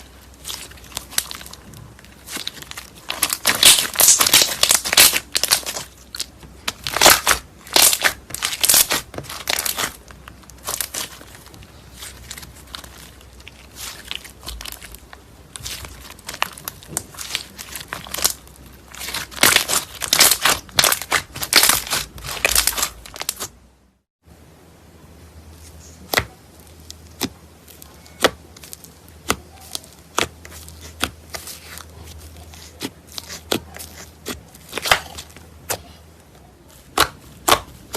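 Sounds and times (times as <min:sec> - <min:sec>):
slime squeezed by hand crackling: 0:00.0 - 0:23.5.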